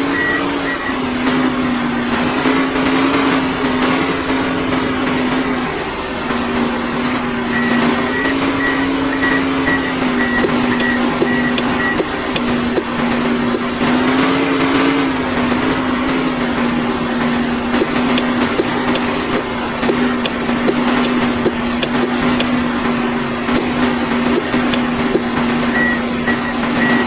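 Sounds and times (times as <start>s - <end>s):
short high-pitched beeps: 0.0s - 1.0s, 7.5s - 12.1s, 25.7s - 27.0s
vehicle motor humming whine: 0.0s - 27.0s.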